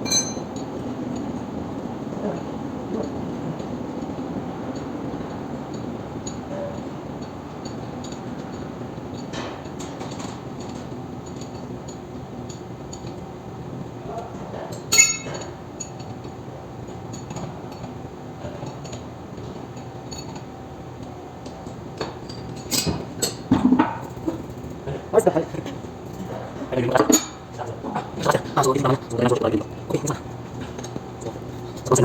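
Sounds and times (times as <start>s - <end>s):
metal tools clinking and clanking: 0.0s - 0.6s, 14.9s - 16.0s, 22.4s - 24.8s, 25.6s - 27.4s
steady background hum: 0.0s - 32.0s.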